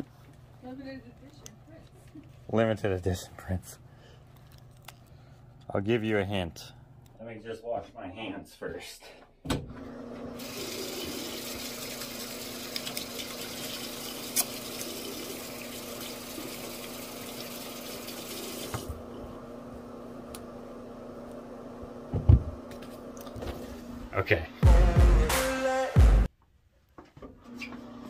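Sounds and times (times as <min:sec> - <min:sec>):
hands washing under water: 0:10.4 - 0:18.8
tap water running into sink: 0:10.4 - 0:18.9.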